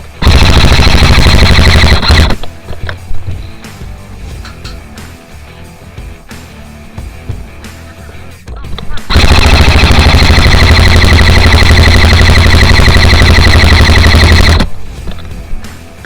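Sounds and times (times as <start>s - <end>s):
airsoft gun full-auto burst: 0.1s - 2.4s, 9.1s - 14.7s.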